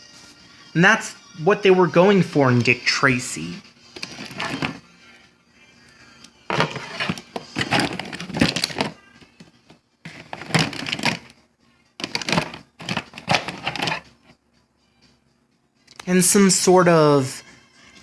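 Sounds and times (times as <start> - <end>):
packaging crackling and rustling: 4.0 - 4.8, 6.6 - 9.0, 10.1 - 11.3, 12.0 - 14.0.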